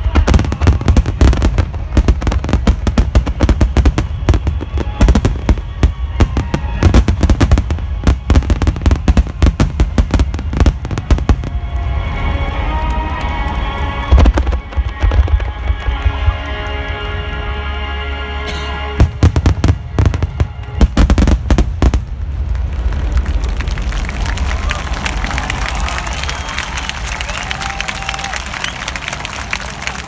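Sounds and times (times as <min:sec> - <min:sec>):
fireworks booming and crackling: 0:00.0 - 0:12.6, 0:13.6 - 0:16.8, 0:19.0 - 0:27.0
music: 0:00.0 - 0:22.0.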